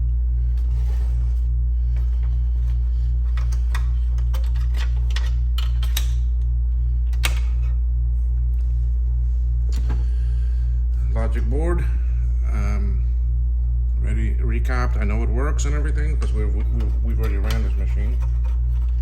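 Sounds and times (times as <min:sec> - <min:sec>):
low throbbing hum: 0:00.0 - 0:19.0
computer parts clicking and tapping: 0:16.2 - 0:19.0.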